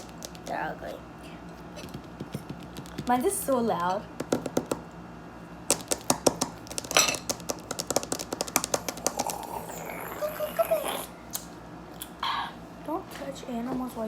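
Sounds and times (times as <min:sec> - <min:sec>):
fingernails tapping on hard surface: 0:01.8 - 0:03.2, 0:04.2 - 0:04.8, 0:05.7 - 0:09.6.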